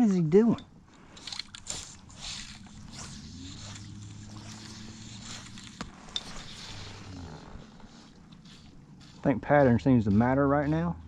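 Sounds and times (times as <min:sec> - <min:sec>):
hissing swishes: 0:01.2 - 0:09.2
low motor hum: 0:01.6 - 0:09.6.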